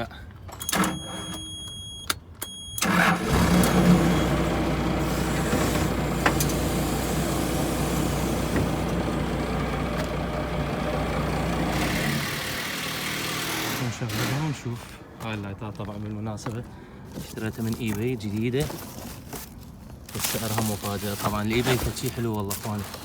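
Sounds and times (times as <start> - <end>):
car lift humming with hiss: 2.8 - 15.0.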